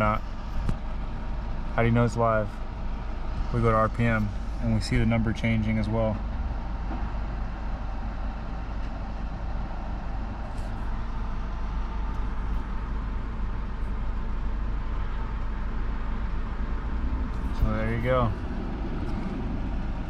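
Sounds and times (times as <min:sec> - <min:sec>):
car engine idling: 0:00.0 - 0:20.0.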